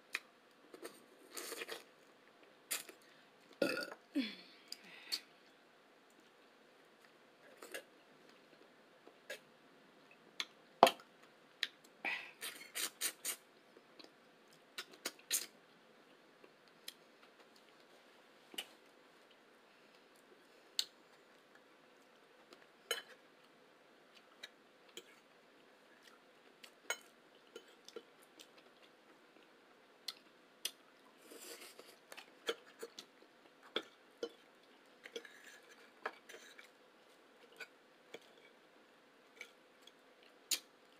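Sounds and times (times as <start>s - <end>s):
chewing: 26.0s - 38.6s.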